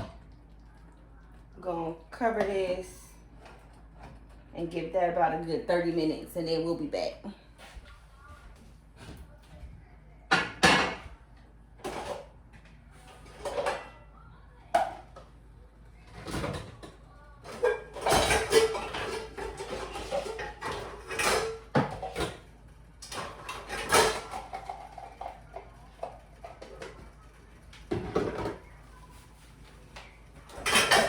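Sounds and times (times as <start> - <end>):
cookware clattering: 10.3 - 11.1, 13.2 - 14.0, 16.2 - 27.0, 30.5 - 31.0
scraping utensils: 17.5 - 22.4, 23.0 - 25.3, 30.5 - 31.0.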